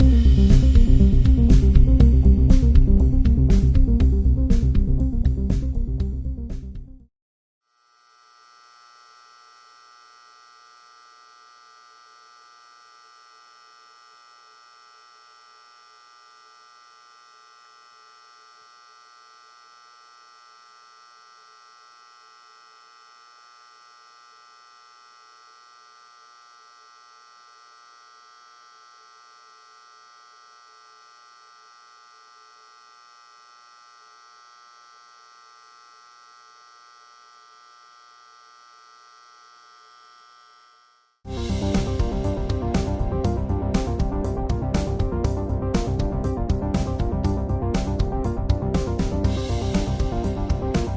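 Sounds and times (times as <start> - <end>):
fluorescent light humming: 7.9 - 40.3.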